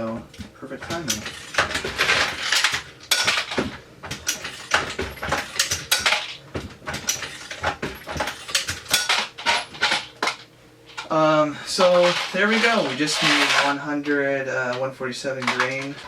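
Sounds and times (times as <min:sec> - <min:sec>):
metal clinking and rattling: 0:00.3 - 0:11.1.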